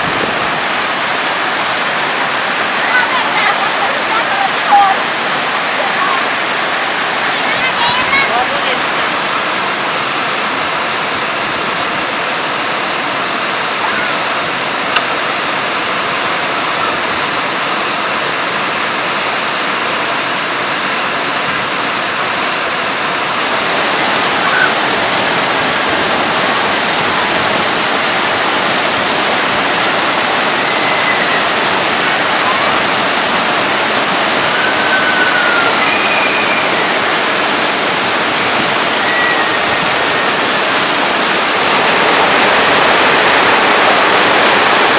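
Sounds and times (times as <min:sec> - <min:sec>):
waterfall roaring: 0:00.0 - 0:44.9
faint short whistles: 0:34.6 - 0:36.7.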